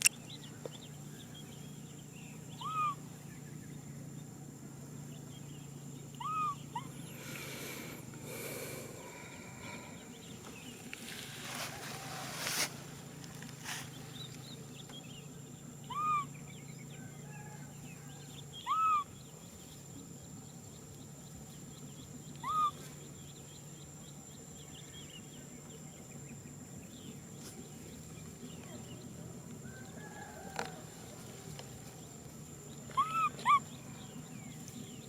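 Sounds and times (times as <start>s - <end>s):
baby macaque coo calls: 2.6s - 3.1s, 6.2s - 7.4s, 15.9s - 16.4s, 18.6s - 19.1s, 22.4s - 22.8s, 32.9s - 33.9s.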